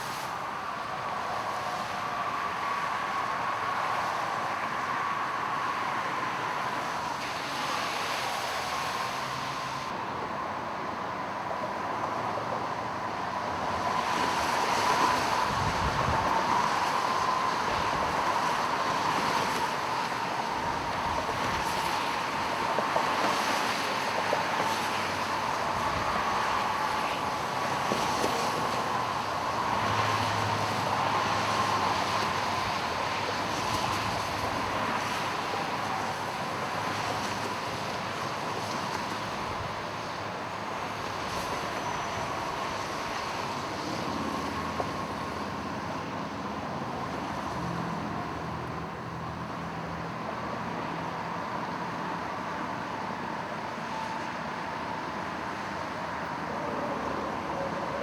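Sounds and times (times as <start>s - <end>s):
traffic hiss on wet road: 0.0s - 58.0s
vehicle engines passing: 13.4s - 40.0s.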